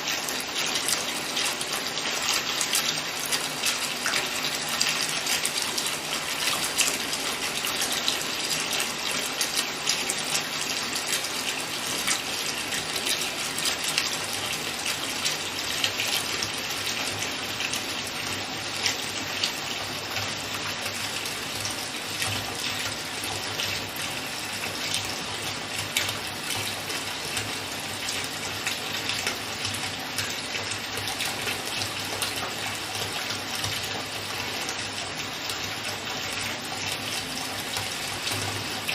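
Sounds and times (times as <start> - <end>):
tap water filling bathtub: 0.0 - 38.9.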